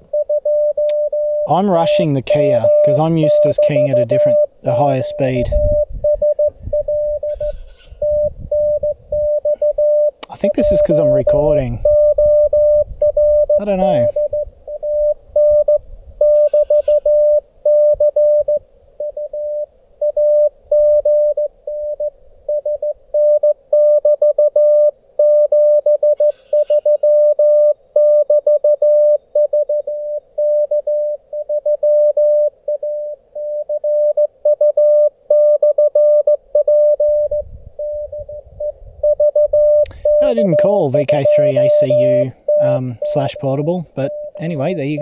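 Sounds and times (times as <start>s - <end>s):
morse code tone: 0.1s - 45.0s.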